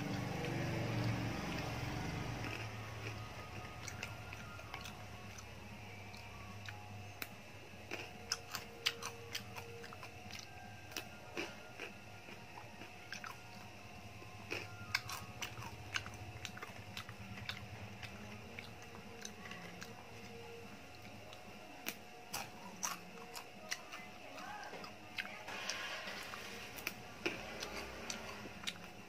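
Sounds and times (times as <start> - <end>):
crunchy snack being chewed: 2.3 - 29.0.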